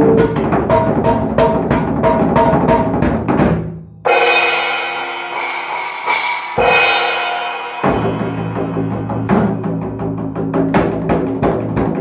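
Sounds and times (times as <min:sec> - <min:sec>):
drum strokes: 0:00.0 - 0:12.0
cymbal struck and ringing: 0:04.0 - 0:10.2.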